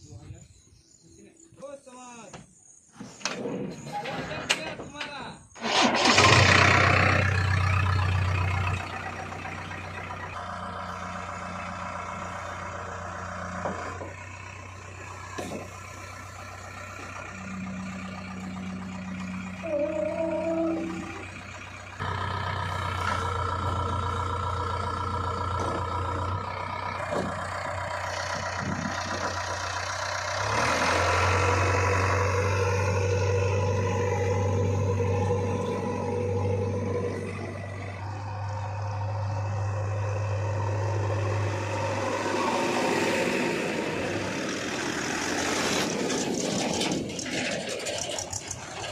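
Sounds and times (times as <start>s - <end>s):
heavy diesel engine running: 5.6s - 48.9s
wavering higher tone: 16.9s - 21.8s, 31.6s - 44.1s.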